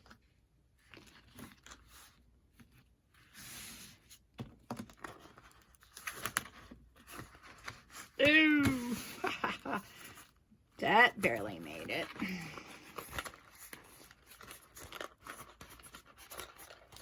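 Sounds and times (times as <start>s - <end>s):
paper rustling: 4.8s - 8.2s, 11.3s - 17.0s.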